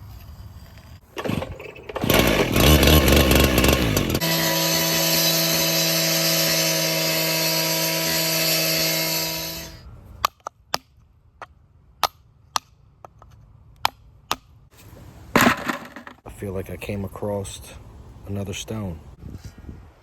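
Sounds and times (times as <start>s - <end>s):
power tool motor whining: 1.1s - 9.8s.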